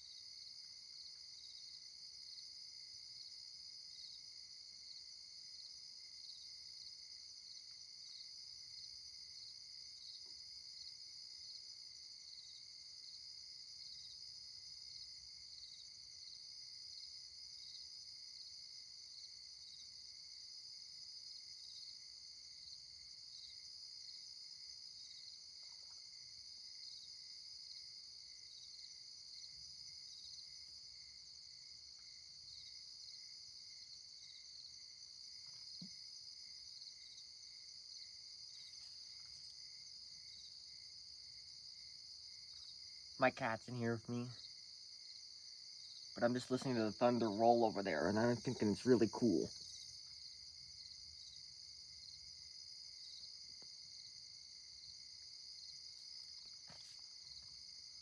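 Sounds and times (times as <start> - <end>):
night insects chirping: 0.0 - 58.0.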